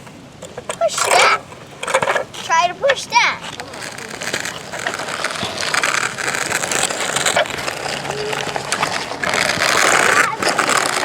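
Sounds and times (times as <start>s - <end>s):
toy truck scraping through sand: 3.4s - 11.0s.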